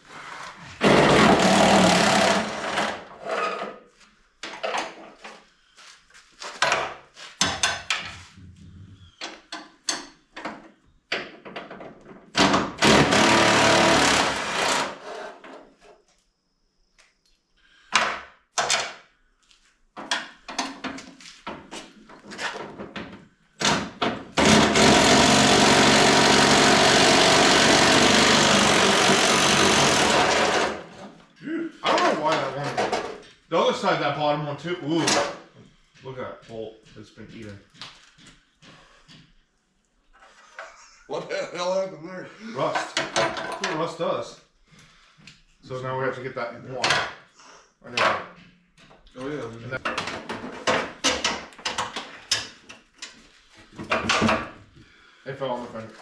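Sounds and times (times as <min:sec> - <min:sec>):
power tool bursts: 0:00.8 - 0:03.0, 0:12.4 - 0:15.3, 0:24.4 - 0:31.0
clanks of tools and metal parts: 0:02.8 - 0:05.5, 0:06.5 - 0:08.3, 0:09.1 - 0:12.8, 0:31.8 - 0:33.5, 0:34.9 - 0:35.6, 0:42.6 - 0:44.0, 0:47.9 - 0:54.7.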